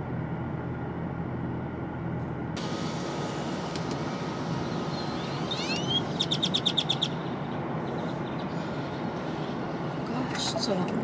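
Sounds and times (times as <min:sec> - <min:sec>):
outdoor rumble and hiss: 0:00.0 - 0:11.0
bird chirping: 0:04.6 - 0:10.0.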